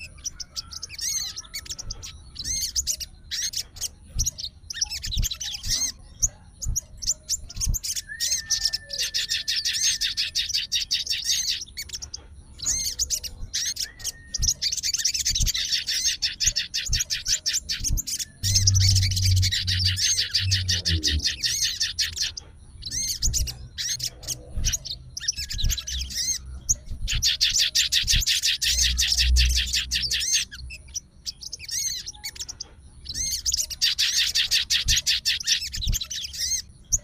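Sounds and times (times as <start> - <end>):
songbird chirping rapidly: 0.0 - 37.0
low hum: 17.8 - 22.2.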